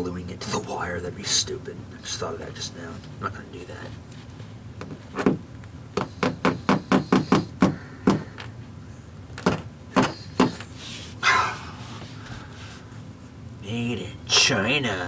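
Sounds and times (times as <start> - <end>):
hammer tapping cable clips: 6.0 - 8.5.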